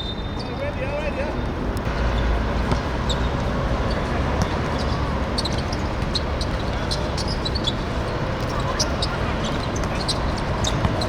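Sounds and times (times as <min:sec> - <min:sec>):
heavy low rumble: 0:01.3 - 0:08.5.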